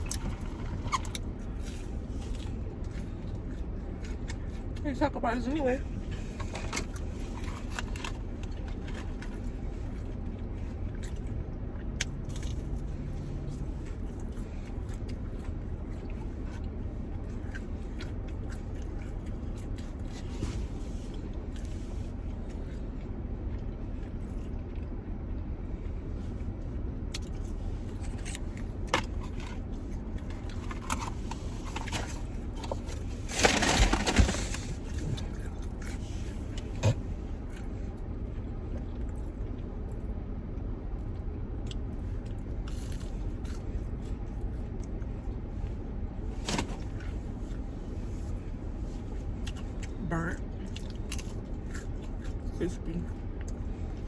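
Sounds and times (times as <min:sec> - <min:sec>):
people eating and handling packaging: 0:00.0 - 0:25.0, 0:25.7 - 0:54.0
car cabin engine hum: 0:00.0 - 0:54.0
packaging rustle: 0:31.7 - 0:35.0.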